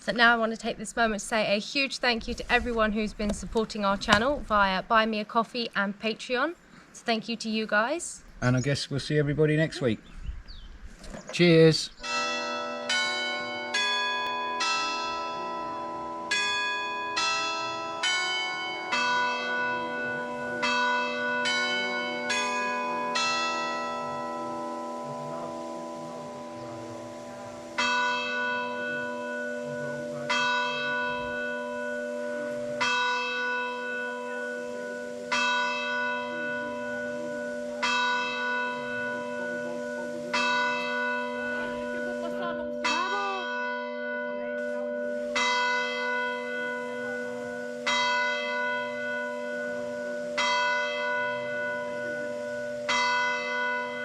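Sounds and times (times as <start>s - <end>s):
lingering bell hum: 11.5s - 54.0s
church bells ringing: 12.0s - 54.0s.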